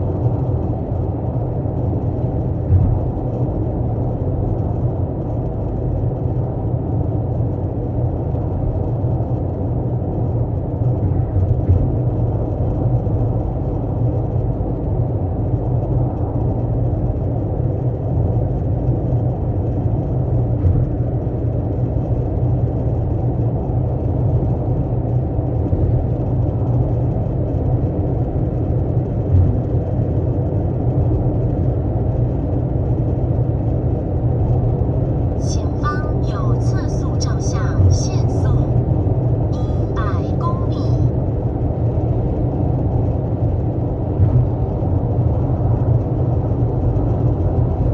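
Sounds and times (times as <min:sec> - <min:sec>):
car engine rumbling: 0:00.0 - 0:47.9.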